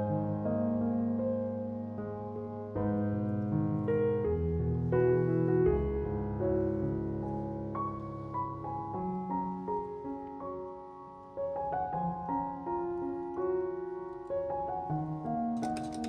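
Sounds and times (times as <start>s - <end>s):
soft piano music: 0.0s - 16.0s.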